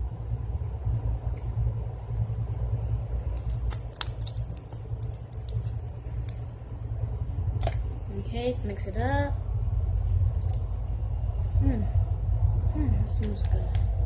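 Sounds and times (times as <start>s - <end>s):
steady low rumble: 0.0s - 14.0s
small crackles and clicks: 0.8s - 6.5s, 10.0s - 10.8s.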